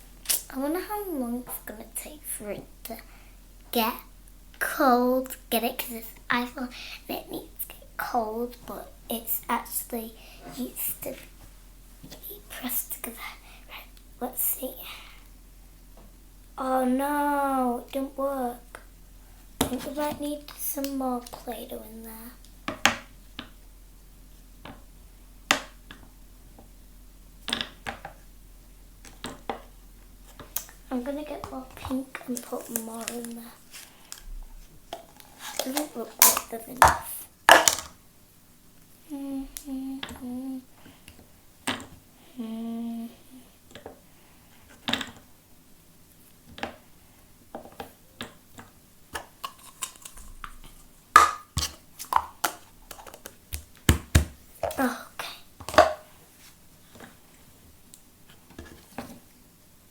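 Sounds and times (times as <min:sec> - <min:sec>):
plastic tubs clicking and tapping: 0:19.6 - 0:21.4, 0:25.5 - 0:26.7, 0:27.4 - 0:28.2, 0:29.0 - 0:29.7, 0:30.3 - 0:34.2, 0:34.9 - 0:38.0, 0:47.5 - 0:54.8, 0:55.6 - 0:56.1.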